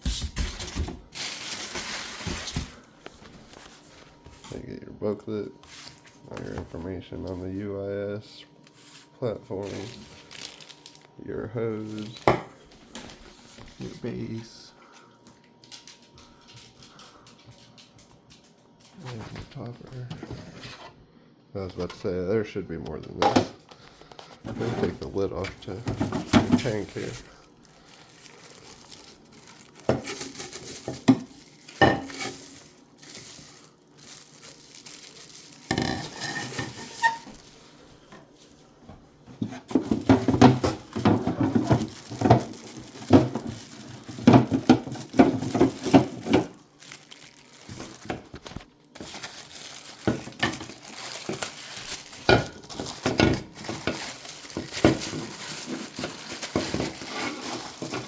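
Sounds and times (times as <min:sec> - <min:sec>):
packaging crinkling: 0:00.0 - 0:04.6, 0:08.9 - 0:11.2, 0:11.8 - 0:14.2, 0:25.0 - 0:37.7, 0:39.6 - 0:58.0
plastic parts knocking and rattling: 0:24.5 - 0:27.3, 0:39.4 - 0:58.0.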